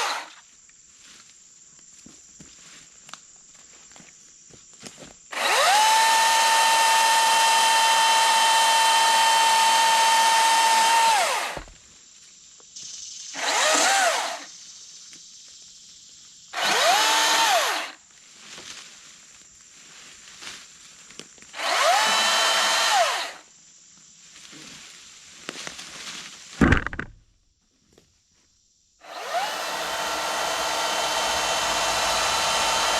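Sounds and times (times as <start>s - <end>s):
battery chainsaw whine: 0.0s - 0.4s, 5.3s - 11.8s, 13.3s - 14.5s, 16.5s - 18.0s, 21.5s - 23.5s, 29.0s - 32.9s.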